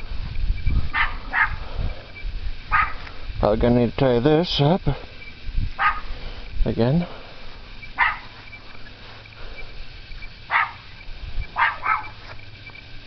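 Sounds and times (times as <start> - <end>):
dog barking: 0.9 - 1.6, 2.7 - 3.0, 5.8 - 6.1, 8.0 - 8.3, 10.5 - 10.8, 11.6 - 12.2.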